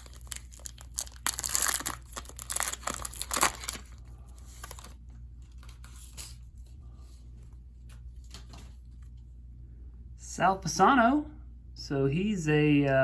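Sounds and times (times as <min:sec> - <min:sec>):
wrapper crinkling and rustling: 0:00.0 - 0:06.4.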